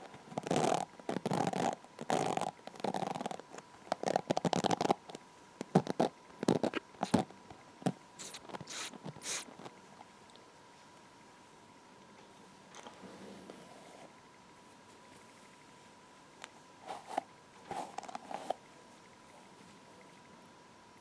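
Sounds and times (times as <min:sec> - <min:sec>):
hair brushing rustles: 0:08.2 - 0:09.5.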